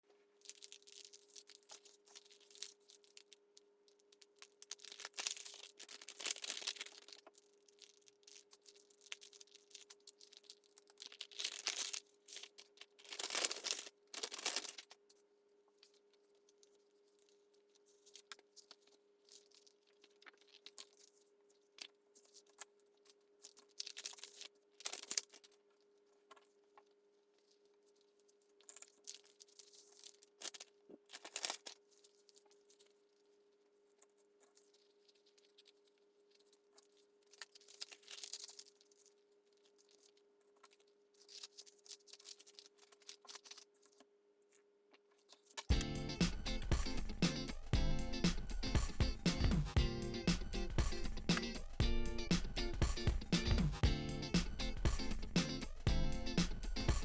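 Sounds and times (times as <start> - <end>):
paper rustling and tearing: 4.7 - 7.2, 8.6 - 15.1.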